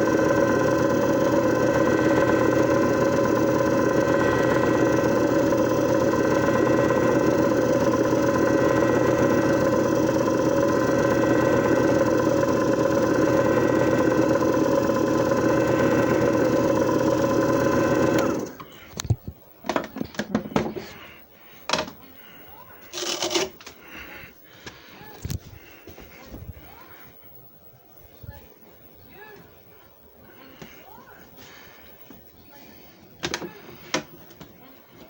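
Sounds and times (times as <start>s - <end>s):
machine motor hum: 0.0s - 19.2s.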